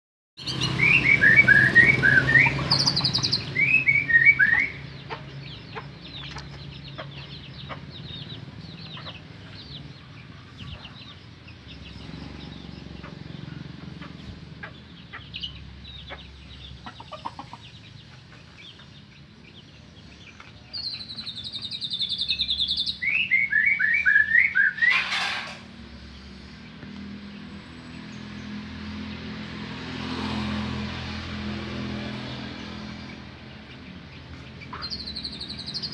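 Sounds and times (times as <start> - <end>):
bird singing whistled notes: 0.4 - 5.0, 19.5 - 25.0, 34.9 - 35.9
bird chirps and trills: 0.4 - 31.1, 31.7 - 35.9.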